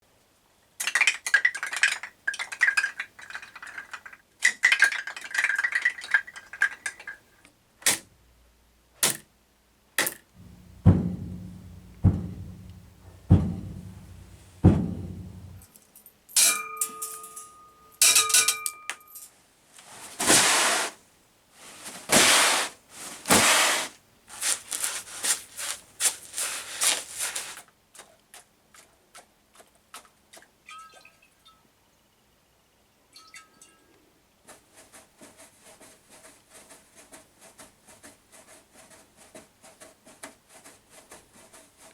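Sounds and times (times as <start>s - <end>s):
low thuds: 10.4s - 15.6s
objects clinking and rattling: 15.3s - 19.3s.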